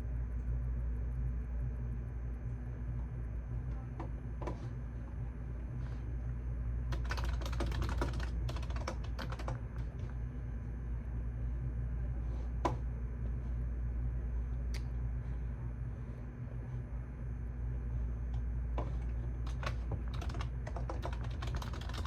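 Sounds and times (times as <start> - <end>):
steady low hum: 0.0 - 22.0
typing on computer keyboard: 6.9 - 10.1, 19.4 - 22.0.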